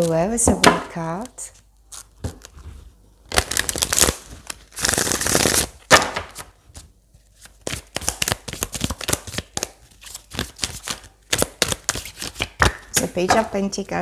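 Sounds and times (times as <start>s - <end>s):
cards shuffling: 3.6s - 13.2s.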